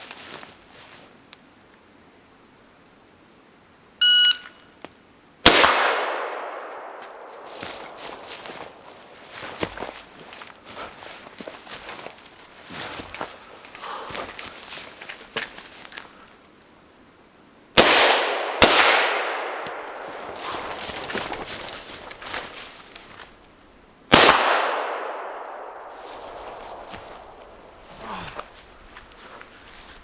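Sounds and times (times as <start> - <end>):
rifle shots: 5.4 - 7.6, 17.8 - 20.3, 24.1 - 27.6
rolling echo: 5.5 - 9.1, 17.8 - 20.8, 24.2 - 27.8.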